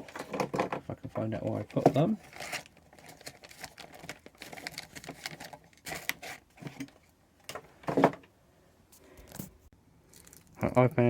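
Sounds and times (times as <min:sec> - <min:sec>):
rummaging through small parts: 0:00.0 - 0:08.2.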